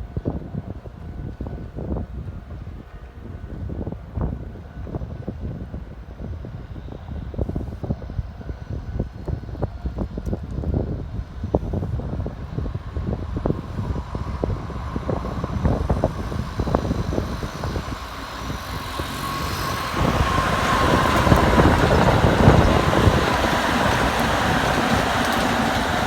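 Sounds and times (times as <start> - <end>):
electric train passing: 0.1 - 26.0
train motor whine: 0.1 - 26.0.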